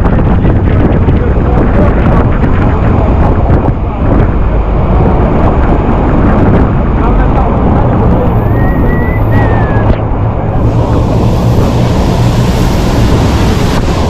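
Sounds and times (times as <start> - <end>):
wind buffeting microphone: 0.0 - 14.0
waterfall rushing: 6.8 - 14.0.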